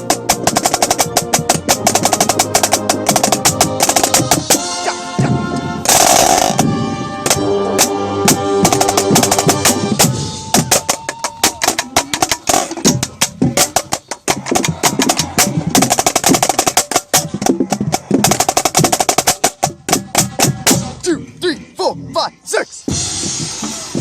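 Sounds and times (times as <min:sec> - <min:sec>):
marching snare drum: 0:00.0 - 0:21.0
drum corps playing: 0:00.0 - 0:24.0.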